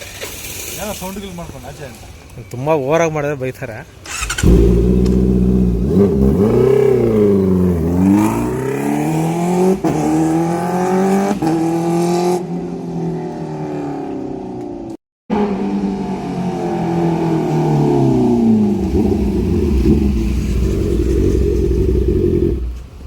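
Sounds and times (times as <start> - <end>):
motorcycle revving and pulling away: 4.0 - 23.0.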